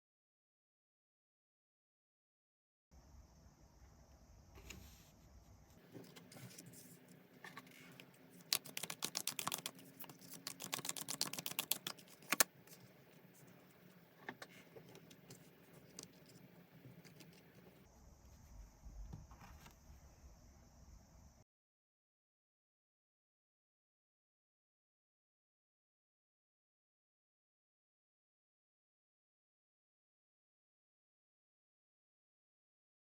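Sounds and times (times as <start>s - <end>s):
cards being shuffled: 5.9s - 12.9s
crisp card clicks: 8.4s - 12.5s.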